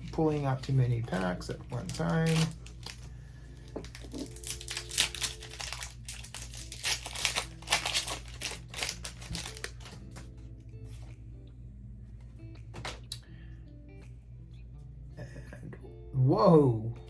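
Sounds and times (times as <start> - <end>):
foil wrappers crinkling: 0.0 - 10.3.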